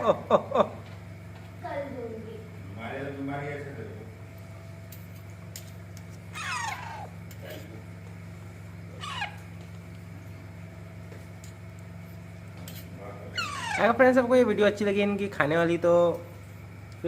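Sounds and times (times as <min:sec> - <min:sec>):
steady low hum: 0:00.0 - 0:17.0
parrot sharp calls: 0:06.3 - 0:07.2, 0:08.9 - 0:09.7, 0:13.3 - 0:14.1.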